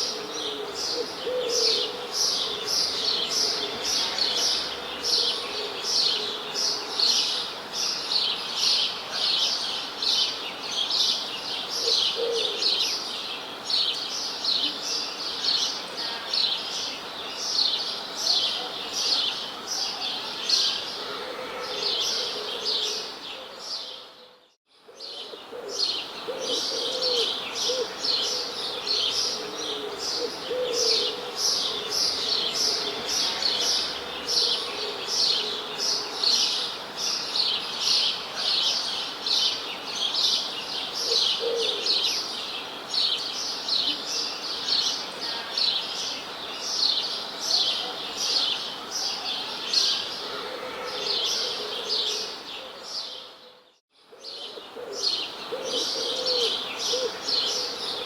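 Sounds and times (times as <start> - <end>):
low wavering cooing: 0.0 - 7.0, 25.0 - 36.2, 41.1 - 42.0, 50.2 - 52.8, 54.2 - 58.0.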